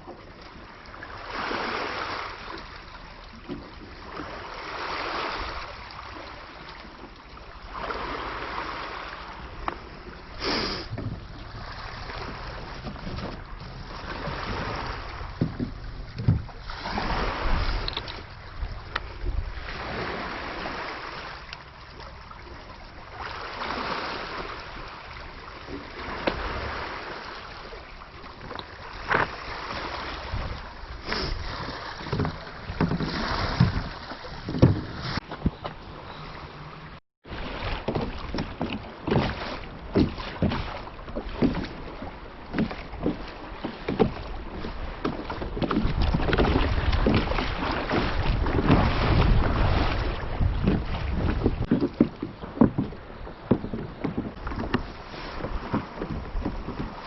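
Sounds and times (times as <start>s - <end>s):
water sloshing against kayak: 0.0s - 57.0s
wind on microphone: 10.4s - 20.8s, 28.9s - 35.9s, 44.1s - 57.0s
short knocks and clicks: 15.4s - 16.5s, 50.7s - 57.0s.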